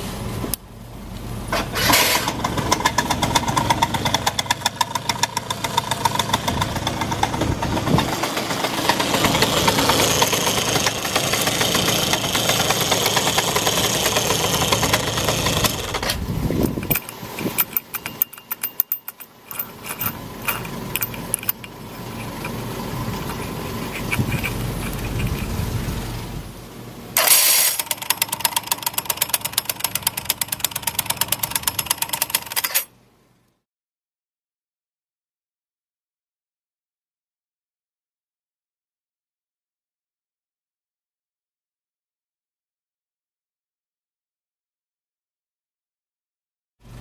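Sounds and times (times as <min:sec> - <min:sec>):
moped engine rattling tick: 0:02.3 - 0:25.6, 0:27.8 - 0:32.7.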